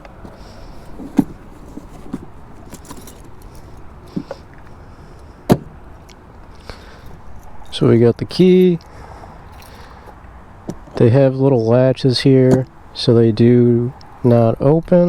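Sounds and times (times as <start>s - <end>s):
keys jangling: 2.6s - 3.8s.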